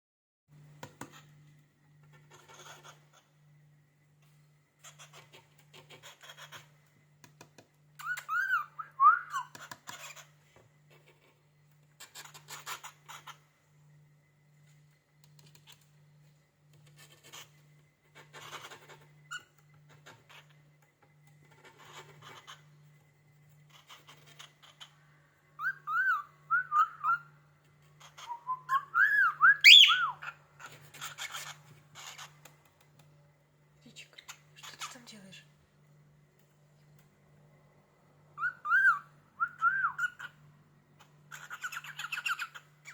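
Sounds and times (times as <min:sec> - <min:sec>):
cockatiel whistling: 0:08.0 - 0:09.5, 0:25.6 - 0:27.3, 0:28.2 - 0:30.3, 0:38.4 - 0:40.3.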